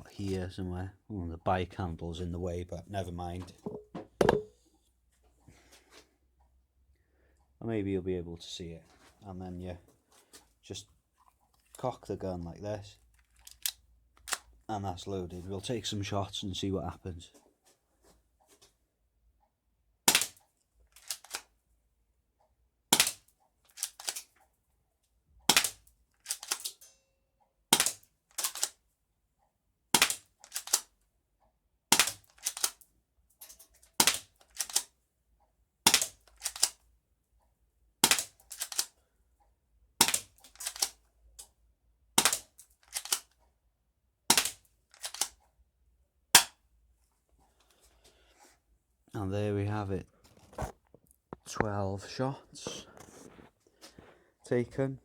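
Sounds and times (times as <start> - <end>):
gun cocking clicks: 23.8 - 24.3, 25.6 - 26.8, 27.8 - 28.8, 30.0 - 30.9, 44.4 - 45.3
bb pistol shots: 38.0 - 38.3.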